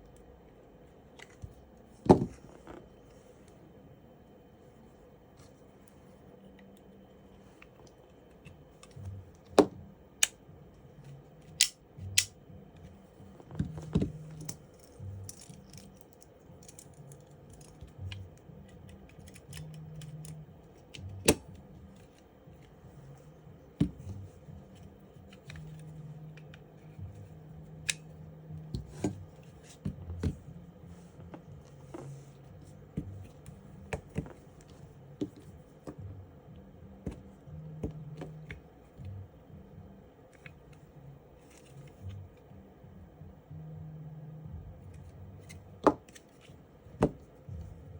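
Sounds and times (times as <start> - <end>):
clicks of small parts fitted: 11.5 - 12.3.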